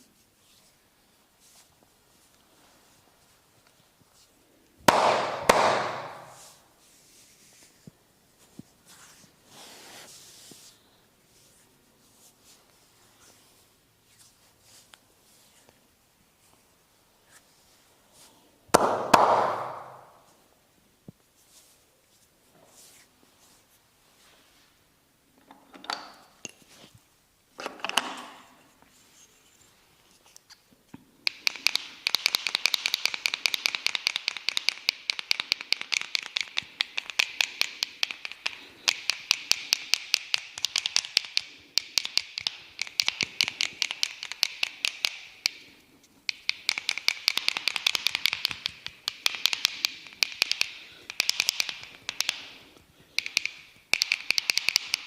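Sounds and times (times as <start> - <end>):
soft rustles: 0.0 - 4.6, 6.3 - 18.6, 20.2 - 25.0, 28.5 - 30.7
rapid massage tapping: 4.9 - 6.5, 18.8 - 20.2, 31.3 - 45.6, 46.2 - 55.0.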